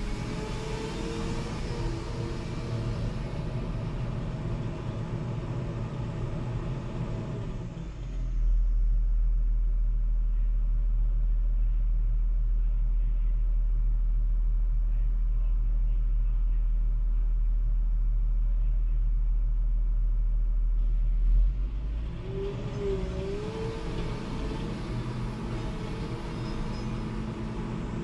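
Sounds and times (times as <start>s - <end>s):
low hum: 8.3s - 28.0s.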